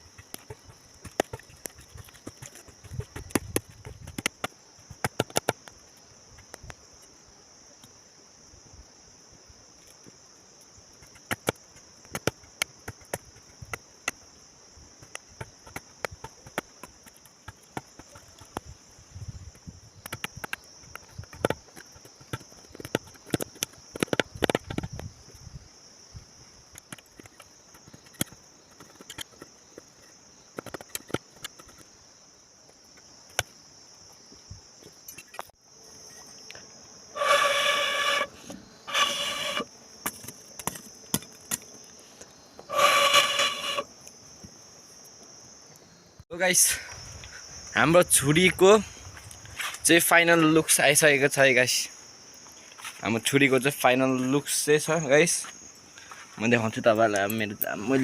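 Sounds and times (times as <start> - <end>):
insect trilling: 0.0 - 8.0, 9.7 - 44.4
sharp clicks and knocks: 0.1 - 5.8, 30.6 - 31.9.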